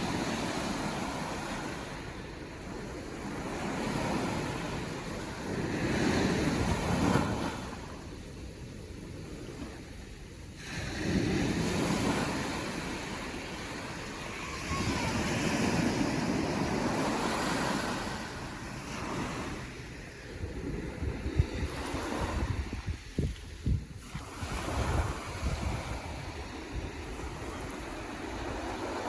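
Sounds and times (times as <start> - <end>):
ocean waves breaking: 0.0 - 29.0
wind buffeting microphone: 0.0 - 29.0.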